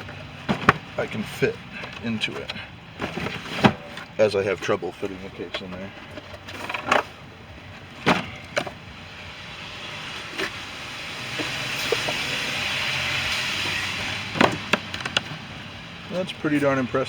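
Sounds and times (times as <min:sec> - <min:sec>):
knocks and thumps: 0:00.0 - 0:08.8, 0:13.6 - 0:15.4
rushing scraping noise: 0:00.0 - 0:16.3.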